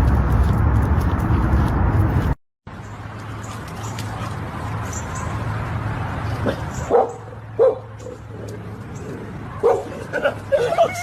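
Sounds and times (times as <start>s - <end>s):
dog barking: 6.8s - 8.2s, 9.6s - 10.0s.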